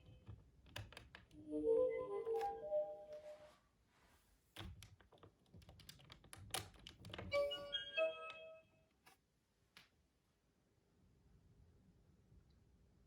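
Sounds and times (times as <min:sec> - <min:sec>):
toy electronic beeping jingle: 0:07.4 - 0:08.7.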